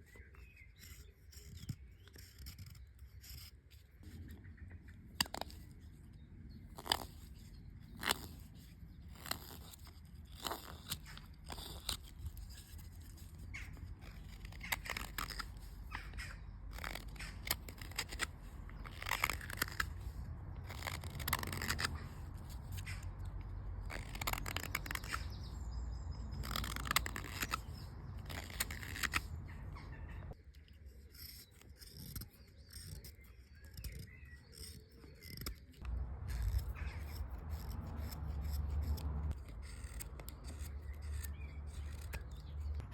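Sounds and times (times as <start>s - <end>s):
knife shaving wood: 0.0s - 42.9s.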